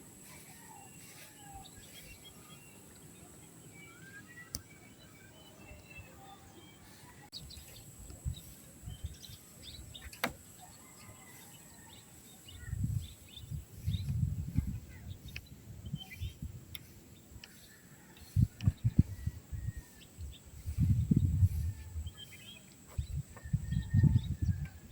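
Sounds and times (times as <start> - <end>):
birds chirping: 0.0 - 24.9.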